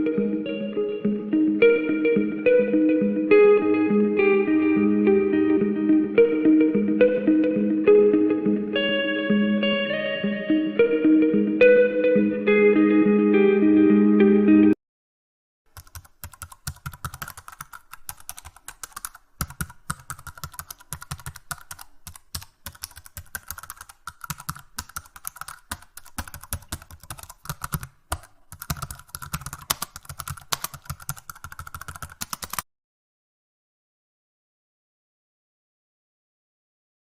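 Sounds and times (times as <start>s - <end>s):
keyboard typing: 15.7s - 32.6s.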